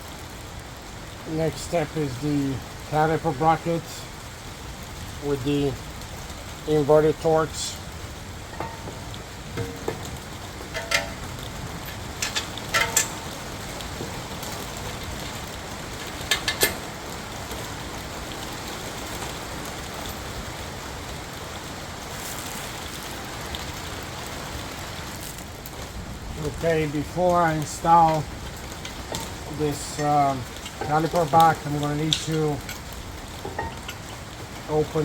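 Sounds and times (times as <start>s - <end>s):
workshop background hiss: 0.0s - 35.0s
metal clinks and clanks: 8.5s - 15.4s, 16.0s - 17.1s, 27.5s - 35.0s.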